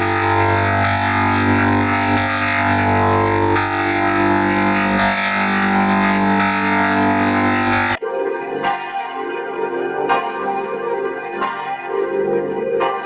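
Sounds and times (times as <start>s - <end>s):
sustained drone of bell tones: 0.0s - 8.6s.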